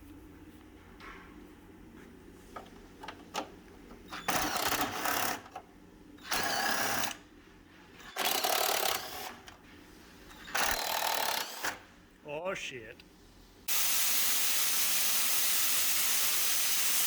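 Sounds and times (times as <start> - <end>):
power tool running: 8.1 - 9.4, 10.5 - 11.8.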